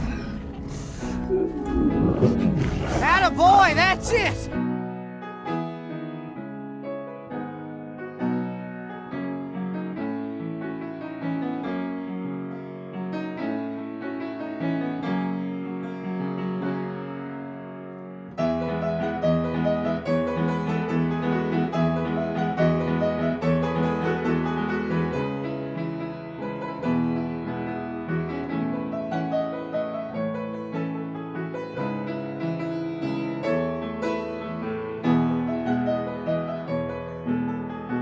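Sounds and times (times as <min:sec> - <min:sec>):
piano music: 0:00.0 - 0:15.8, 0:16.9 - 0:38.0.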